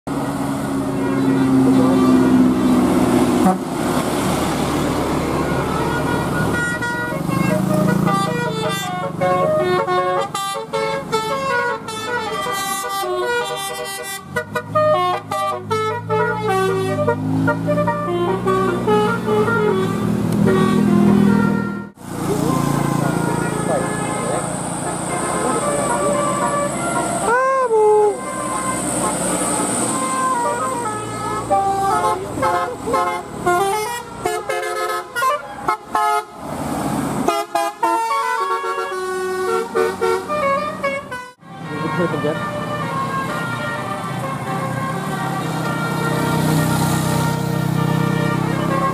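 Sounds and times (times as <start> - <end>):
bus air horns playing melody: 0.7 - 48.9
low steady horn tone: 5.5 - 22.0, 22.6 - 27.0, 30.0 - 36.4, 37.3 - 48.9.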